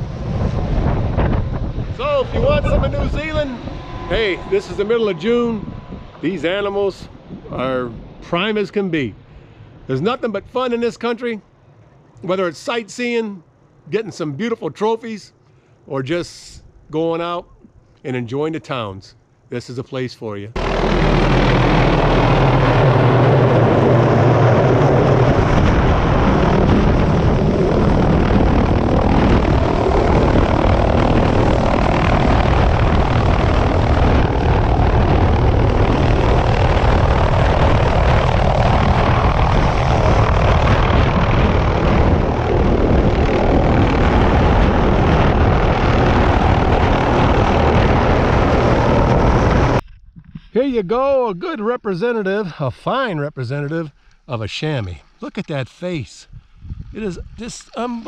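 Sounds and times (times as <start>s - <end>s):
helicopter engine and rotor: 0.0s - 8.2s, 20.6s - 49.8s.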